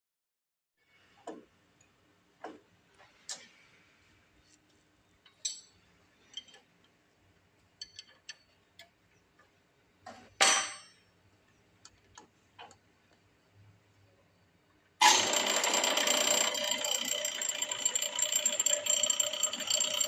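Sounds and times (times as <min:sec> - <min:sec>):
metal clicks and clinks: 0:05.3 - 0:06.7, 0:07.8 - 0:08.9.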